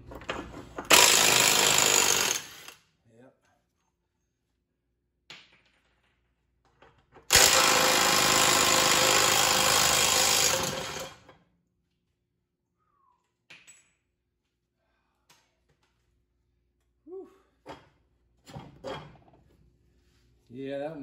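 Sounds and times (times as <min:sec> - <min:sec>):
impact wrench hammering: 0:00.9 - 0:02.7, 0:07.3 - 0:11.2.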